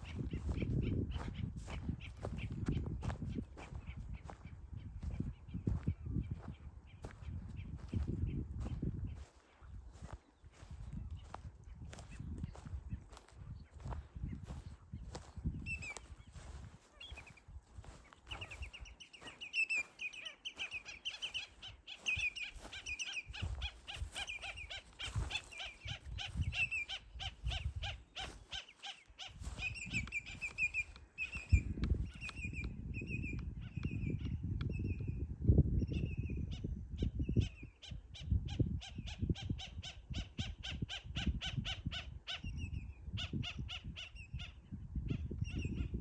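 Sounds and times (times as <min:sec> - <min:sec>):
footsteps walking: 0:07.8 - 0:32.1
faint bird chirps: 0:08.6 - 0:35.1
evenly spaced bird notes: 0:18.0 - 0:26.0.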